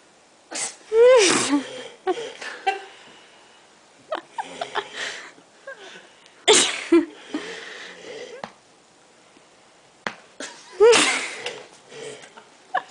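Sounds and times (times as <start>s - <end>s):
wheezy breaths: 1.3s - 6.5s, 7.1s - 8.4s.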